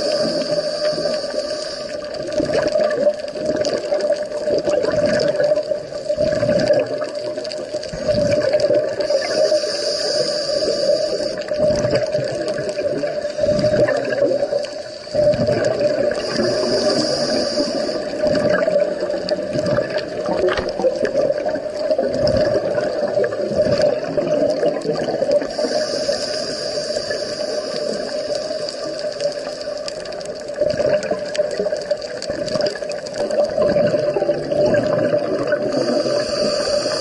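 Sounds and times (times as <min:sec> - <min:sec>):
high hiss: 0:00.0 - 0:02.1, 0:09.0 - 0:11.5, 0:16.0 - 0:18.3, 0:25.4 - 0:29.9, 0:35.7 - 0:37.0
diver's regulator breathing: 0:00.0 - 0:02.8, 0:07.8 - 0:30.6, 0:35.2 - 0:37.0
bubbling of exhaled air: 0:00.0 - 0:37.0.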